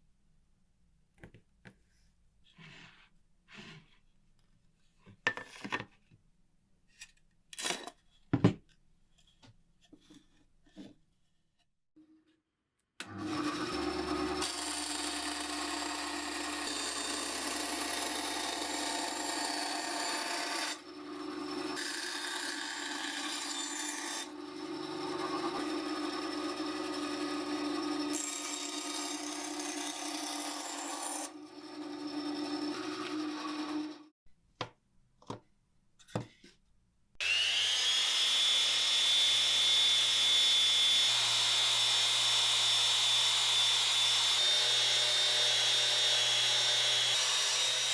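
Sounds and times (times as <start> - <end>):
power tool grinding wood: 13.0 - 34.1, 37.2 - 47.9.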